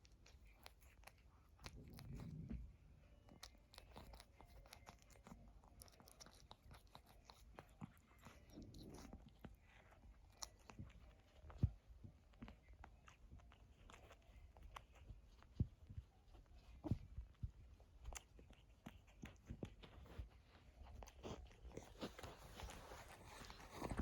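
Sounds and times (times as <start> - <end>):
cat fur being groomed: 0.0 - 24.0
low rumble: 1.6 - 3.5.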